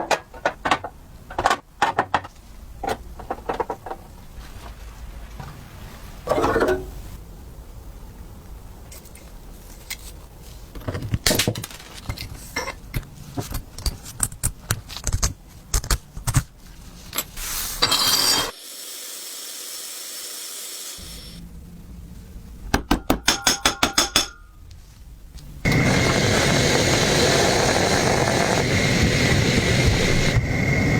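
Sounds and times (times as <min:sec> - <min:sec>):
steady hiss: 0:17.3 - 0:22.6, 0:24.9 - 0:30.9.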